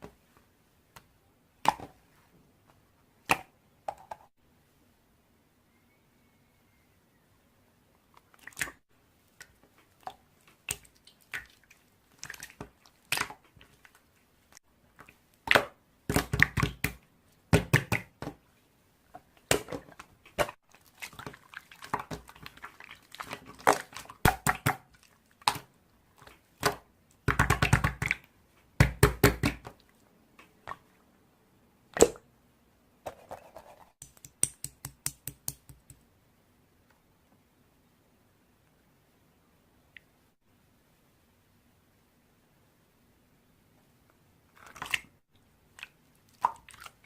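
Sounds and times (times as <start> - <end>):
slime squelching by hand: 8.2 - 14.2, 19.3 - 26.8, 44.6 - 45.1, 45.7 - 47.0.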